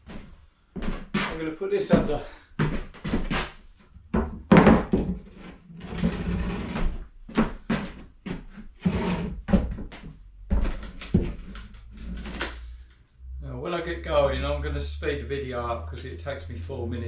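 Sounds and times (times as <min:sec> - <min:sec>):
board scraping: 0:00.8 - 0:03.6, 0:04.8 - 0:12.9
balance board knocking on floor: 0:04.1 - 0:05.3.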